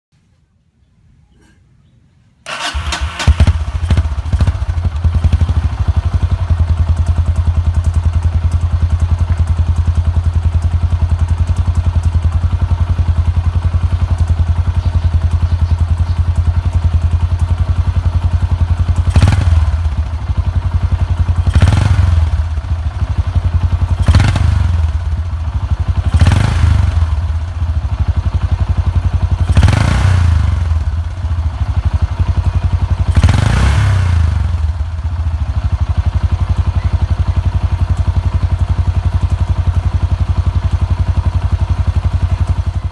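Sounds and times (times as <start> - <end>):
engine revving: 2.5 - 7.0, 17.1 - 27.6, 29.1 - 35.0
motorcycle engine idling: 2.5 - 42.9.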